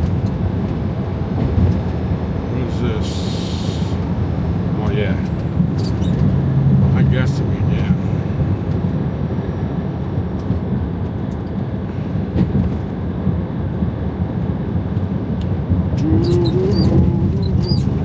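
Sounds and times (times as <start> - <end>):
road noise: 0.0 - 18.0
truck engine rumble: 0.0 - 18.0
high squeaks: 5.8 - 6.3, 16.0 - 18.0.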